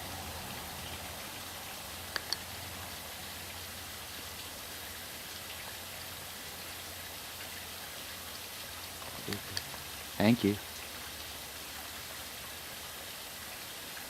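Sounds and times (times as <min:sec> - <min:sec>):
steady hiss: 0:00.0 - 0:14.0.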